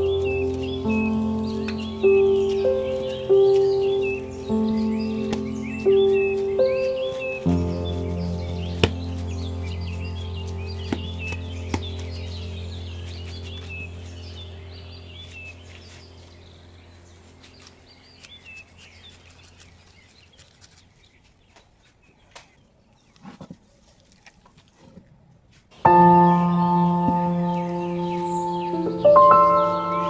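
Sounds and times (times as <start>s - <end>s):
ambient background music: 0.0s - 17.8s, 25.9s - 30.0s
birdsong chirps: 0.0s - 23.2s, 25.8s - 30.0s.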